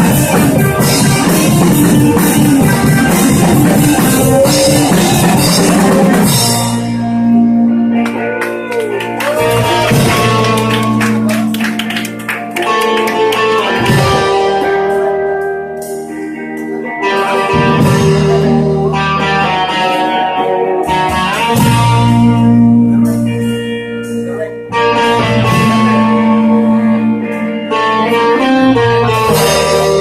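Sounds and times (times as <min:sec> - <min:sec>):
bass guitar: 0:00.0 - 0:30.0
electric guitar chords: 0:00.0 - 0:30.0.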